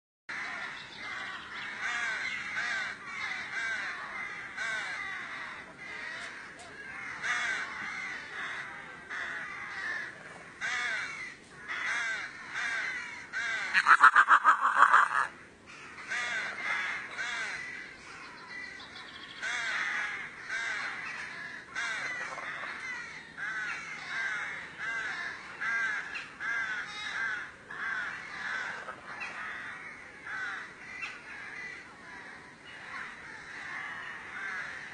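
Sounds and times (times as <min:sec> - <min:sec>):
chorus of wavering animal calls: 0:00.3 - 0:34.9
loud pulsing animal call: 0:09.2 - 0:15.4.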